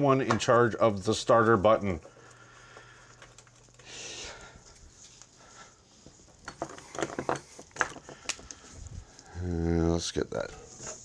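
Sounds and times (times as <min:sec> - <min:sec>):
faint steady hum: 0:00.0 - 0:11.0
light clicks and knocks of tools: 0:06.0 - 0:09.3.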